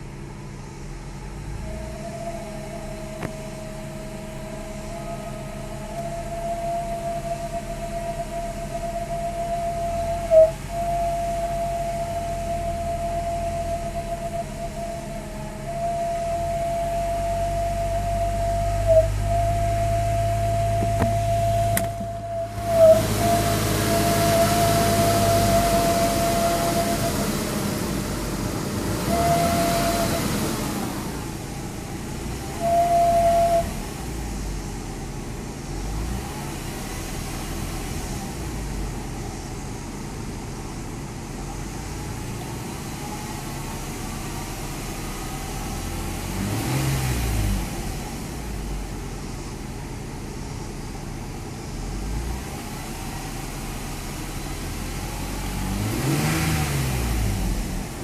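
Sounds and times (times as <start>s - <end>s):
high whine: 0.0s - 42.4s
car engine hum: 0.0s - 58.0s.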